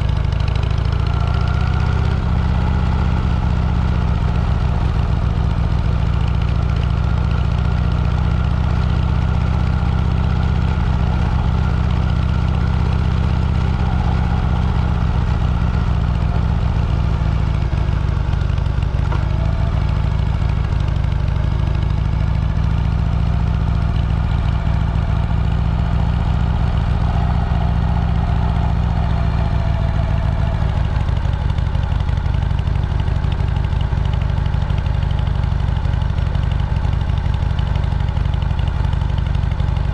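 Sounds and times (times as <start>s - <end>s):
vehicle engine droning: 0.0s - 39.9s.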